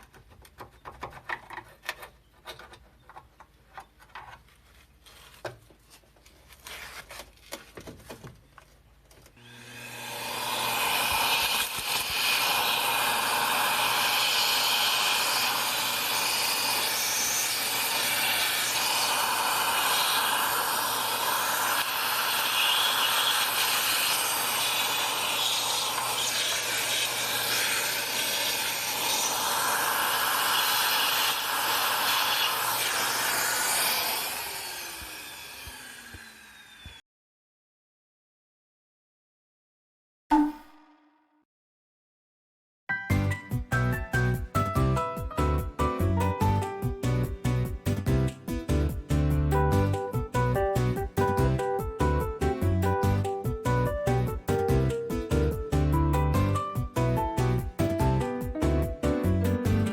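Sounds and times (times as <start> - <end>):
power tool rasping on metal: 9.4 - 37.0.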